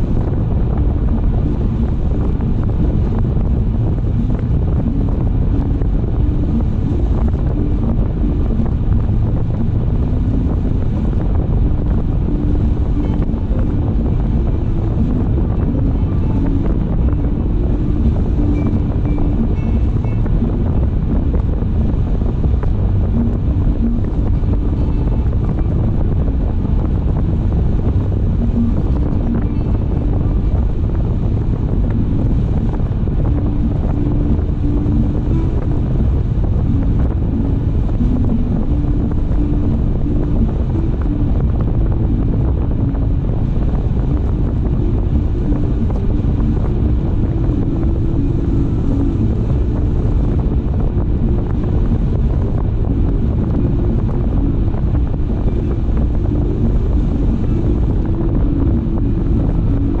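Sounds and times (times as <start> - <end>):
faint engine hum: 0.0 - 60.0
tyre and engine rumble: 0.0 - 60.0
wind noise on microphone: 0.0 - 60.0.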